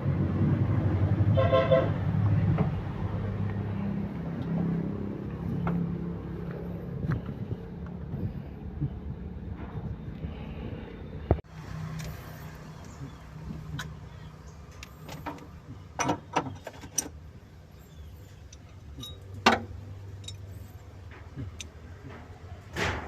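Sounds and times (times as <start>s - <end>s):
van engine idling: 1.4s - 22.9s
metallic clinks and knocks: 18.5s - 20.6s.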